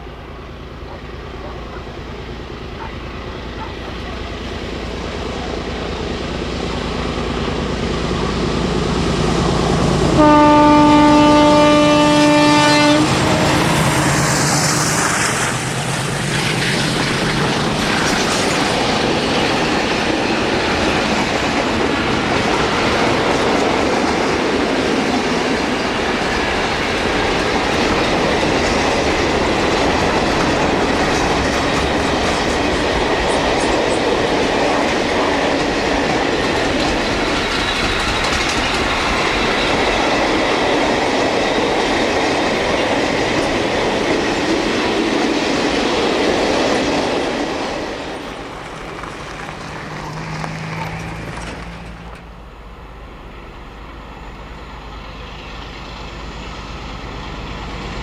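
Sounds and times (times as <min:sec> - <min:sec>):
freight train approaching: 0:00.0 - 0:58.0
wheels clacking on rails: 0:00.0 - 0:58.0
train horn blast: 0:09.7 - 0:15.1.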